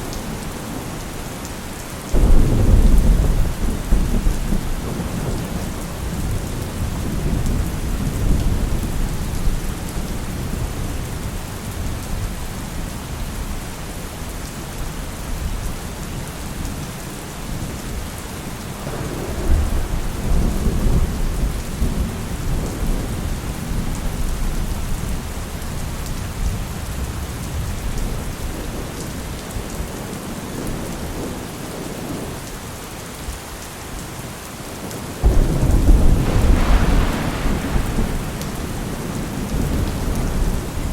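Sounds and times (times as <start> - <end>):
heavy rain falling: 0.0 - 40.9
thunder rumbling: 2.1 - 10.6, 18.8 - 24.8, 35.2 - 40.9.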